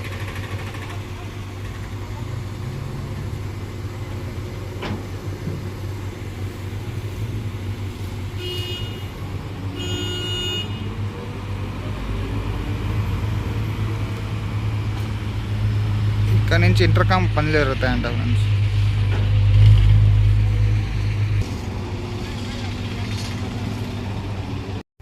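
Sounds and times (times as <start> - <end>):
vehicle engine running: 0.0 - 24.8
high-pitched horn honks: 8.3 - 11.0.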